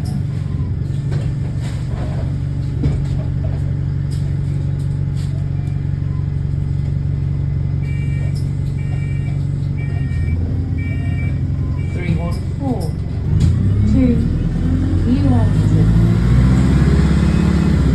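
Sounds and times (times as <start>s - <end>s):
bus diesel engine running: 0.0s - 17.9s
electronic warning beeps: 7.9s - 12.2s.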